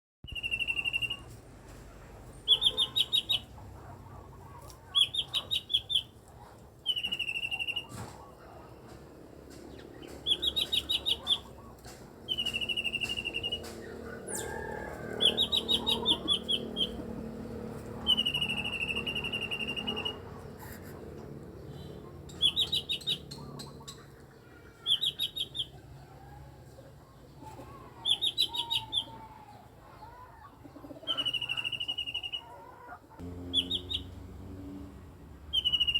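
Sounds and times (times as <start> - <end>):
bird singing trills and buzzy notes: 0.3 - 1.3, 12.3 - 14.6, 15.3 - 17.0, 18.0 - 20.3, 33.2 - 34.9, 35.5 - 35.9.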